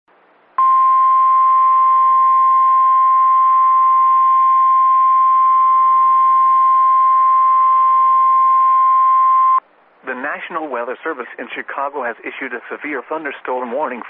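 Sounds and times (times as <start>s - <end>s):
faint radio hiss: 9.6s - 14.0s.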